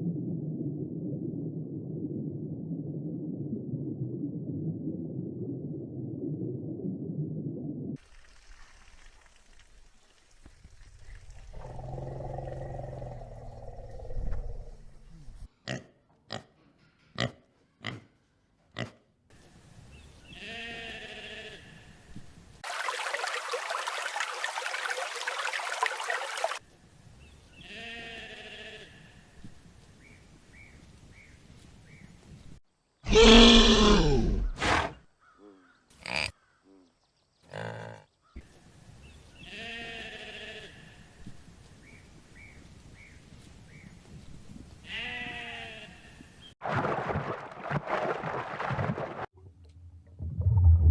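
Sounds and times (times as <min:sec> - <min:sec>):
loud animal call with falling pitch: 0:33.1 - 0:35.0
short pitched animal call: 0:33.1 - 0:36.8.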